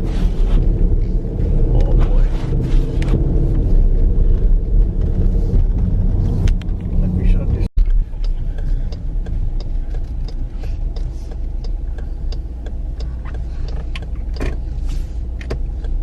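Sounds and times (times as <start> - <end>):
engine and tyres rumbling: 0.0 - 16.0
light ticks and clicks: 7.8 - 16.0.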